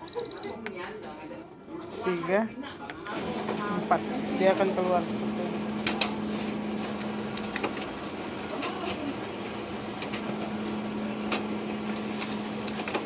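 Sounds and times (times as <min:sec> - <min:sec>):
photocopier humming: 0:03.1 - 0:13.0
photocopier mechanical clicks: 0:05.8 - 0:09.0, 0:09.8 - 0:13.0.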